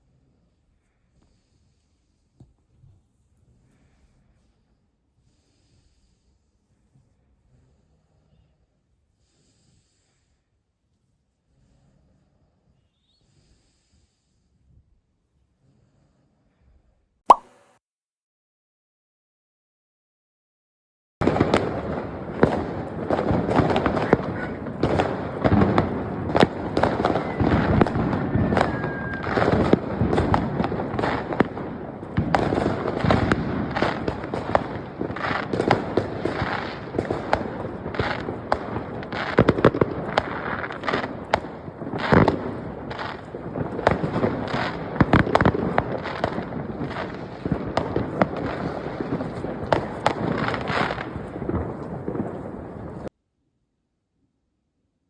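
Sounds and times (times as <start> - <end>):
fireworks cracks and bangs: 21.2 - 53.1
firework whistle: 21.4 - 51.2.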